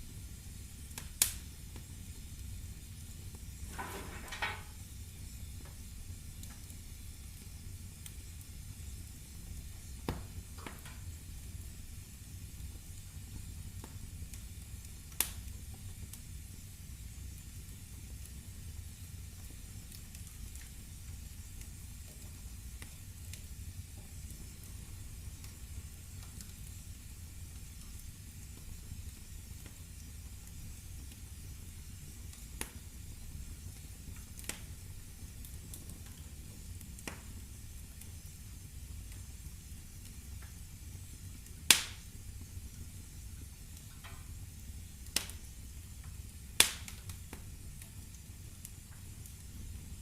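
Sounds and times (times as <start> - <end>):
faint fire hiss: 0.0 - 50.0
firewood crackles and pops: 0.0 - 50.0
low rumble of flames: 0.0 - 50.0.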